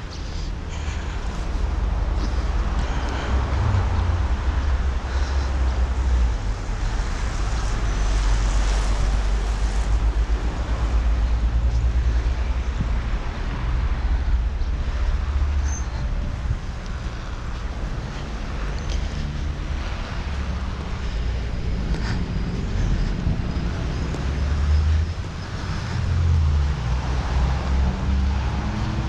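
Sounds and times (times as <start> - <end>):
road traffic hiss: 0.0 - 29.0
wind buffeting microphone: 1.1 - 29.0.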